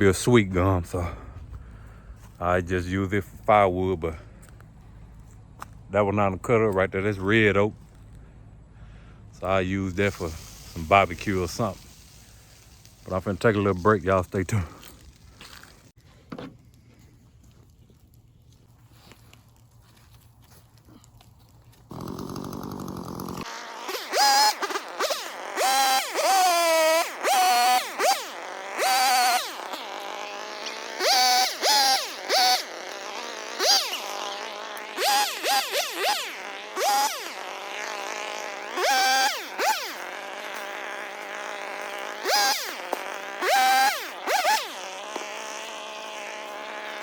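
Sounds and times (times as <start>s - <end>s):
chainsaw idling and revving: 6.6s - 15.9s, 21.8s - 47.0s.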